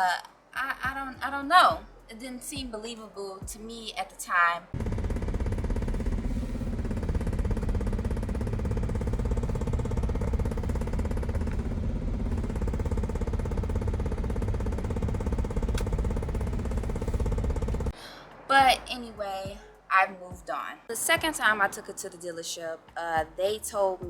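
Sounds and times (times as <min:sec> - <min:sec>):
vehicle engine drone: 0:04.7 - 0:19.8
fast even rattle: 0:04.8 - 0:18.0.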